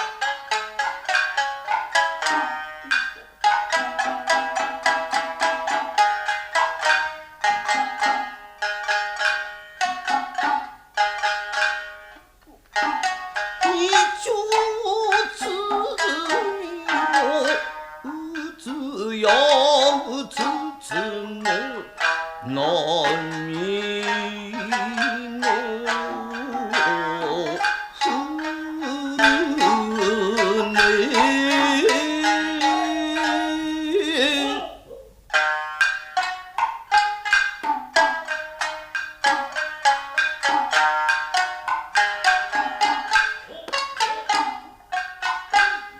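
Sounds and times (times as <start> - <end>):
shamisen plucking: 0.0 - 45.9
long wavering sung notes: 12.8 - 35.0.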